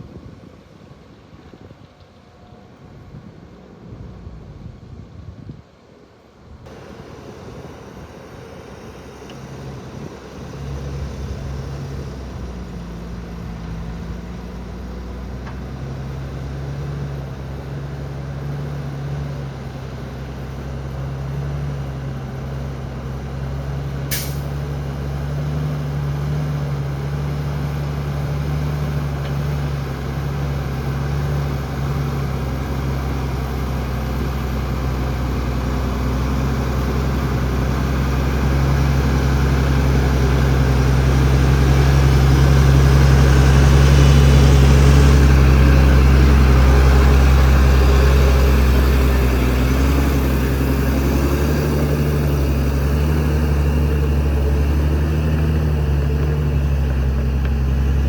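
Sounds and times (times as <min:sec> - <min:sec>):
heavy diesel engine running: 0:06.7 - 0:58.0
sharp hiss: 0:24.1 - 0:24.6.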